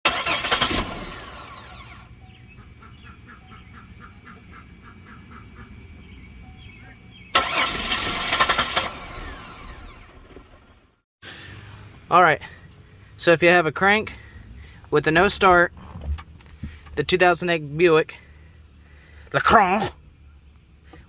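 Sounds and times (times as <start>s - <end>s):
car starter cranking engine: 0.0s - 2.2s, 7.3s - 10.9s.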